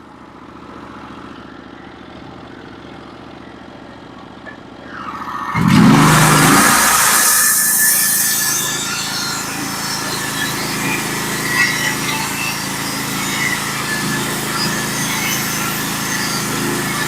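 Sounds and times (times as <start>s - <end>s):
sawmill engine running: 4.4s - 17.0s
saw blade cutting log: 4.9s - 17.0s.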